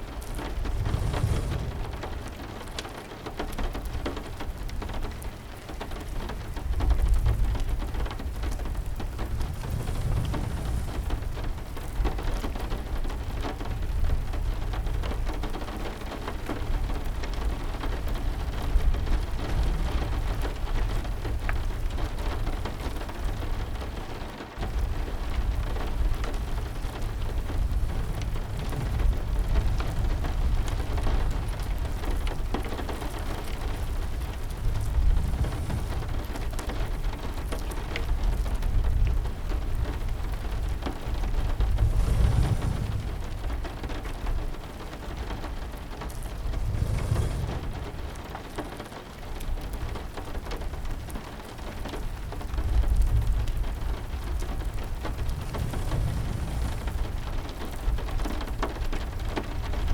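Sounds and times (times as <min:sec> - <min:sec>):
deep low rumble: 0:00.0 - 0:02.8, 0:08.3 - 0:12.9, 0:25.7 - 0:39.2, 0:39.9 - 0:48.8, 0:53.2 - 0:59.2
heavy rain patter: 0:00.0 - 0:59.9.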